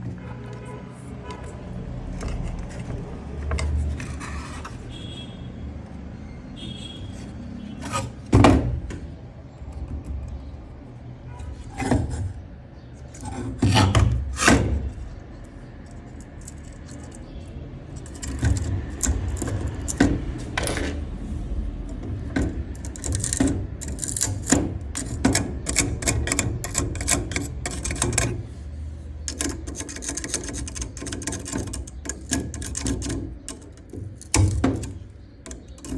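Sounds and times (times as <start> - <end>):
tools scraping: 0.0 - 5.3, 6.7 - 9.1, 11.2 - 35.9
tools clicking and knocking: 1.5 - 4.8, 13.0 - 21.1, 21.8 - 28.5, 29.2 - 35.9.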